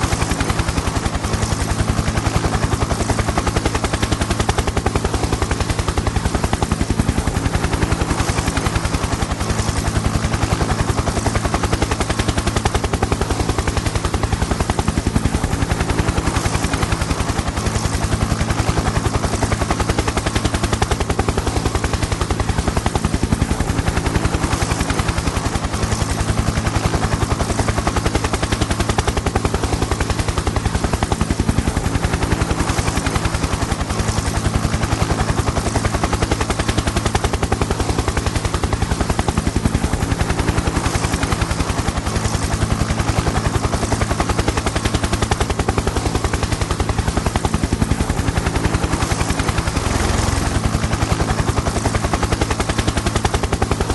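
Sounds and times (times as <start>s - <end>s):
helicopter engine drone: 0.0s - 53.9s
helicopter rotor chop: 0.0s - 53.9s.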